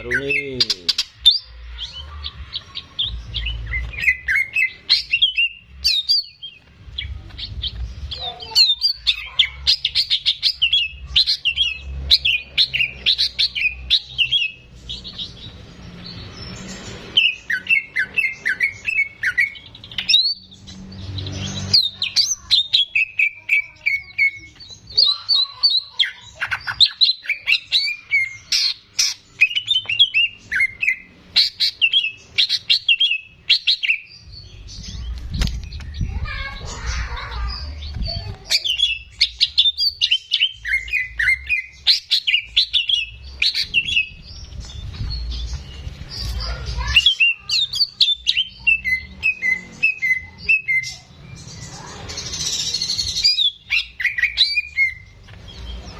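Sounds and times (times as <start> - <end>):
bird chirping and whistling: 0.0 - 15.5, 16.6 - 20.6, 21.4 - 36.1, 37.5 - 55.9.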